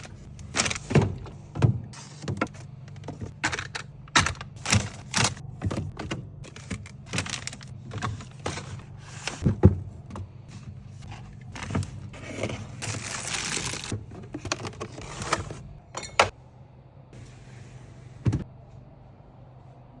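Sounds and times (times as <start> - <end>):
food containers clicking and knocking: 0.0 - 16.3
packaging rustling: 11.5 - 14.0.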